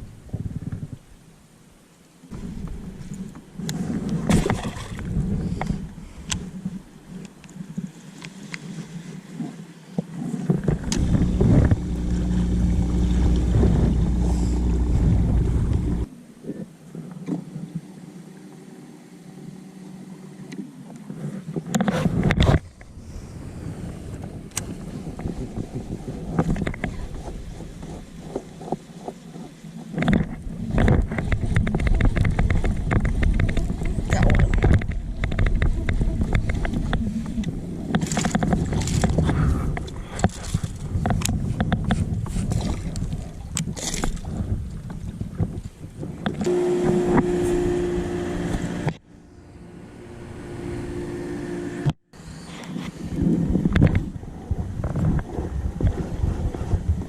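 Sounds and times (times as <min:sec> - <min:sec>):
wind buffeting microphone: 0:00.0 - 0:01.2, 0:02.3 - 0:07.9, 0:10.1 - 0:17.9, 0:21.0 - 0:51.2, 0:51.8 - 0:57.0
boat motor humming: 0:10.6 - 0:16.1, 0:17.3 - 0:21.2, 0:46.2 - 0:52.3.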